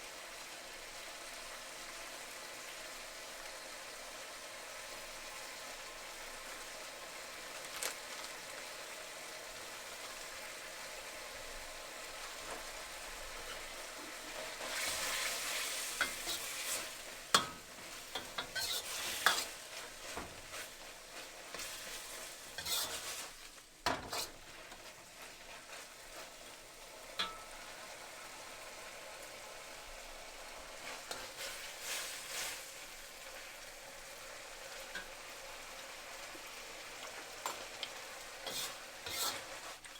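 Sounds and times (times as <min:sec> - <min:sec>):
food sizzling in a pan: 0:00.0 - 0:39.9
utensil scraping pan: 0:13.3 - 0:26.4, 0:30.8 - 0:32.8, 0:37.4 - 0:39.9.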